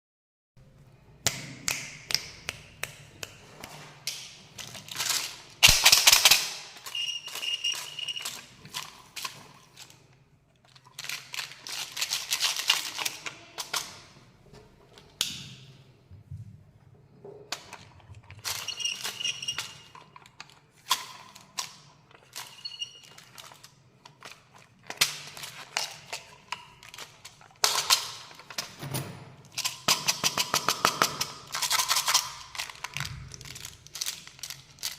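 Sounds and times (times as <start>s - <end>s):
wrapper crinkling: 4.5s - 13.9s, 18.2s - 28.6s, 31.4s - 34.9s.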